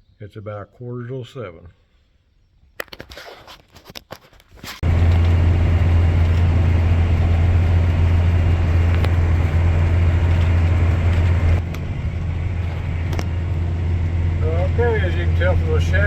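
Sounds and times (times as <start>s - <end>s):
tractor engine running: 4.8s - 16.0s.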